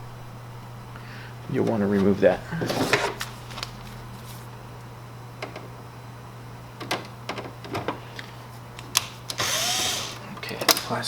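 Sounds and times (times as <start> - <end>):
power screwdriver whir: 9.3 - 10.2.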